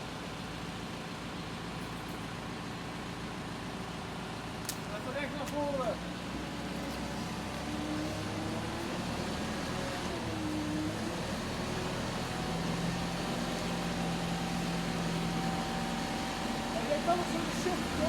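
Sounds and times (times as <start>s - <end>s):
heavy vehicle engine running: 6.1s - 18.0s.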